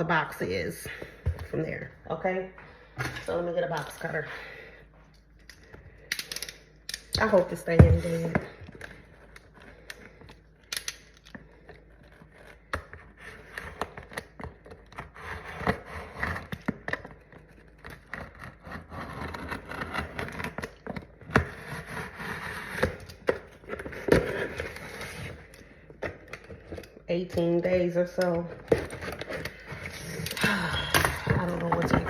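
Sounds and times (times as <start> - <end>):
cardboard scraping tearing and rustling: 11.8 - 25.5.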